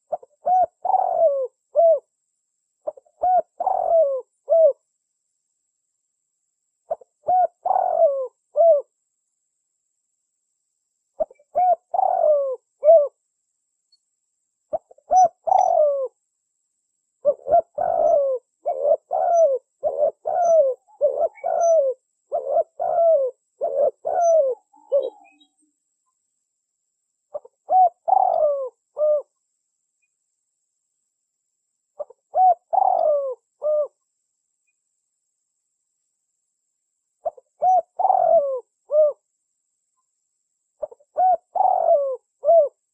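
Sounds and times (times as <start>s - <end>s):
dove cooing: 0.0s - 2.1s, 2.8s - 4.8s, 6.9s - 8.9s, 11.2s - 13.2s, 14.7s - 16.2s, 17.2s - 25.6s, 27.3s - 29.4s, 32.0s - 34.0s, 37.2s - 39.2s, 40.8s - 42.8s.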